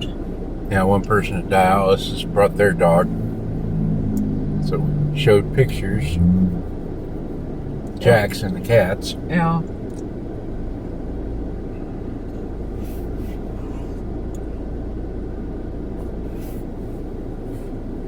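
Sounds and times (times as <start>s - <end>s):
car cabin rumble: 0.0s - 18.0s
faint rustles: 11.7s - 14.8s, 16.0s - 18.0s.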